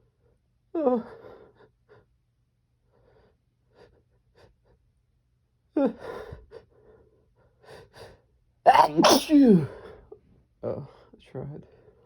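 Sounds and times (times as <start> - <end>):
loud voiced gasp: 8.7 - 9.8.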